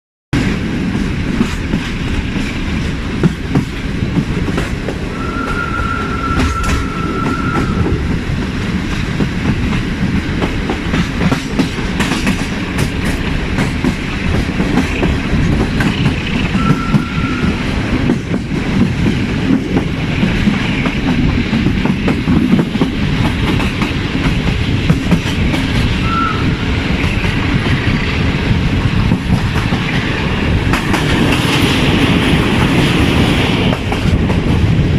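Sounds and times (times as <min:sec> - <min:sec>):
train wheels rumbling and clicking: 0:00.4 - 0:34.9
high steady tone: 0:05.1 - 0:07.9, 0:16.5 - 0:17.6.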